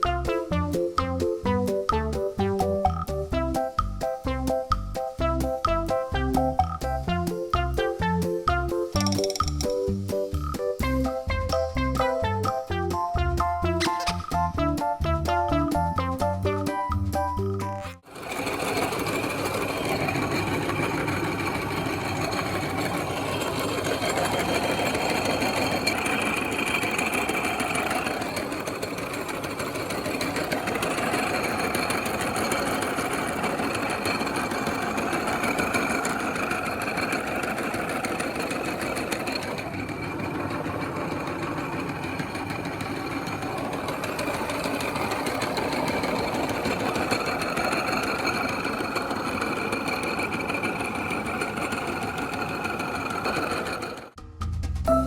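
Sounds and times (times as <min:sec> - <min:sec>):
electric meat grinder whirring: 0:18.0 - 0:54.2.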